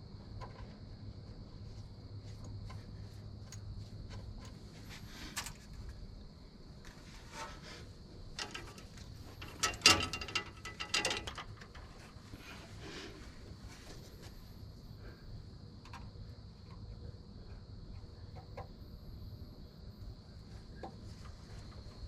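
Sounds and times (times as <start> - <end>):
steady hum: 0.0 - 22.0
parts rattling: 6.9 - 14.1
tools clicking and knocking: 8.4 - 12.1.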